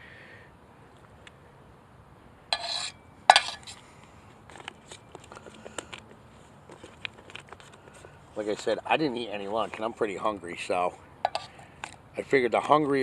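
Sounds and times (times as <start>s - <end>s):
metal cookware clank: 2.6s - 3.6s
metal cookware scraping: 2.6s - 3.7s, 11.3s - 11.6s.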